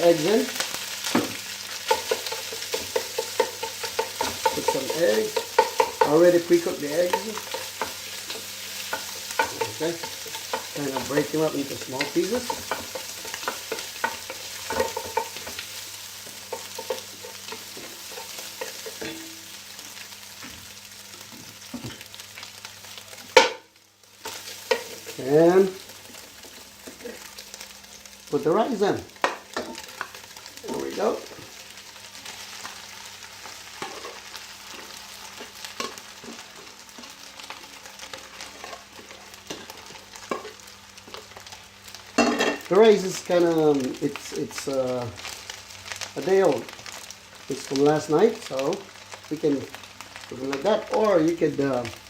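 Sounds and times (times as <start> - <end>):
food sizzling in a pan: 0.0 - 52.0
utensil tapping and scraping pan: 1.1 - 19.4, 24.2 - 25.3, 33.4 - 37.2, 38.1 - 41.3.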